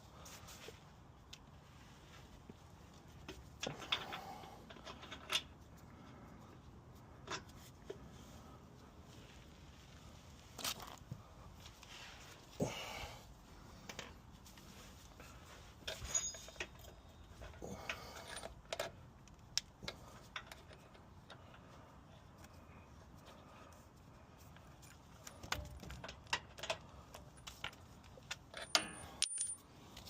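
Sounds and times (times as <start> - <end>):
metallic clinks of hand tools: 15.9 - 17.1, 28.5 - 29.6.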